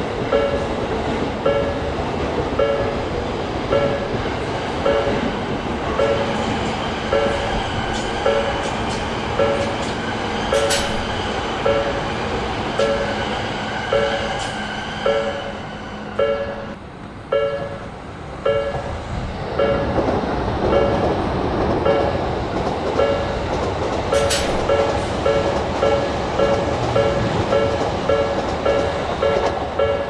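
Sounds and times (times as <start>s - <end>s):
railroad crossing bell ringing: 0.0s - 19.0s, 19.6s - 20.0s, 23.0s - 23.5s, 24.1s - 30.0s
train passing: 0.0s - 30.0s.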